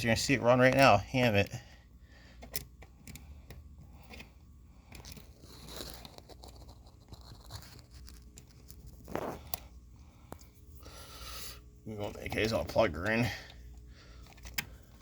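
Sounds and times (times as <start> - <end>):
rustling scrape: 5.3 - 9.5.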